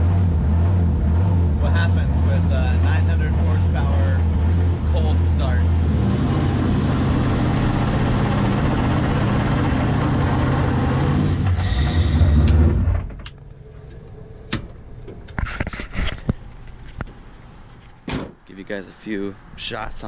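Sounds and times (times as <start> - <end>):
car engine running: 0.0 - 15.4.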